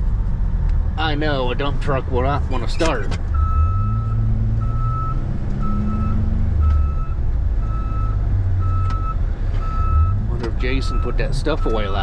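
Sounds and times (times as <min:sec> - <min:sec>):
vehicle engine rumble: 0:00.0 - 0:12.0
backup alarm beeping: 0:03.4 - 0:10.2.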